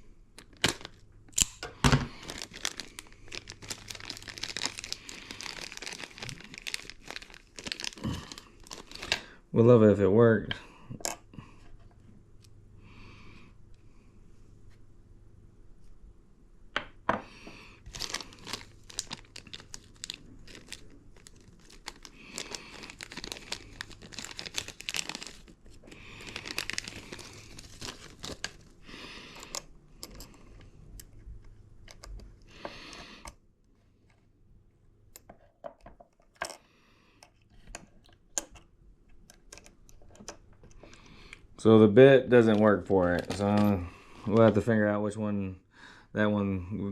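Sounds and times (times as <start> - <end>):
rustling and scraping of tool parts: 29.3 - 34.3, 35.2 - 41.1, 42.4 - 44.7.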